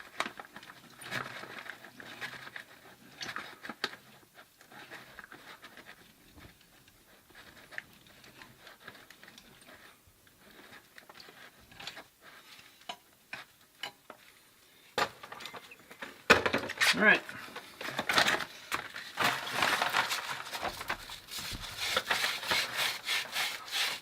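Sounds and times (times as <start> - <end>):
pipe cutter scraping and clicking: 19.9 - 24.0.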